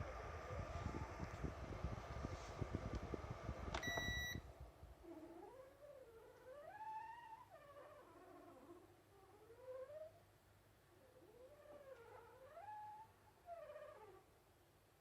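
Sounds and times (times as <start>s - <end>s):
air purifier fan rumbling: 0.0s - 7.2s
short electronic beep: 3.8s - 4.4s.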